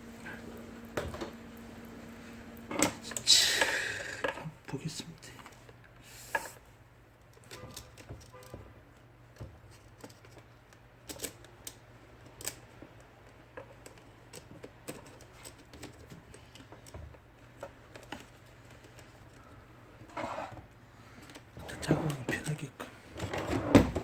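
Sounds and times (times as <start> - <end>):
steady low hum: 0.0 - 7.4.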